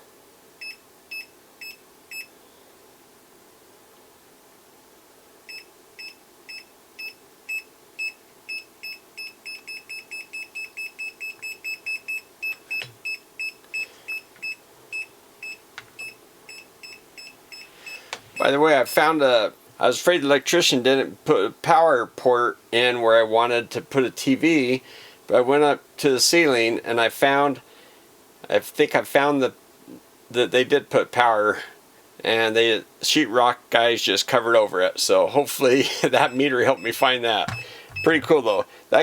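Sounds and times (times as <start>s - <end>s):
multimeter high-pitched beeps: 36.1s - 38.3s.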